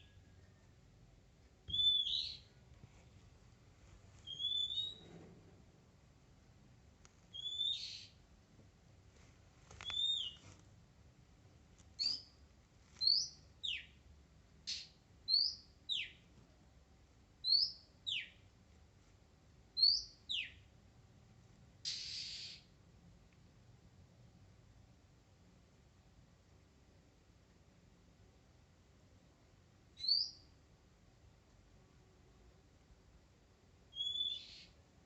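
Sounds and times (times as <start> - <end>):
bird whistled calls: 1.7 - 2.5, 4.2 - 5.0, 7.3 - 8.1, 9.8 - 10.4, 21.9 - 22.6, 30.0 - 30.4, 33.9 - 34.7.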